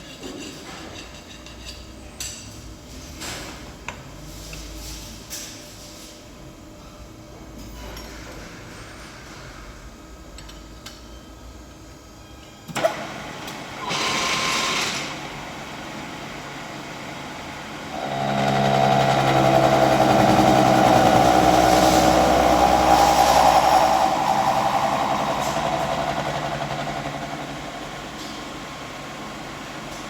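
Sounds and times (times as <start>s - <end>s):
milling machine running: 17.9s - 30.0s
brief rushing noise: 18.7s - 28.1s.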